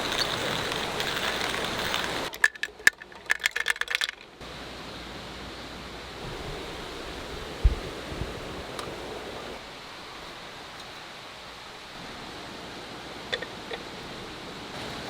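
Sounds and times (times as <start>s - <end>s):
steady hiss like rain: 0.0s - 15.0s.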